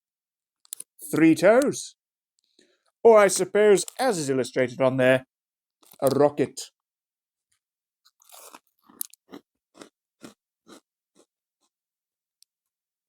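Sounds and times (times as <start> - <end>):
man crunching a hard snack: 5.8 - 6.2, 8.1 - 11.7.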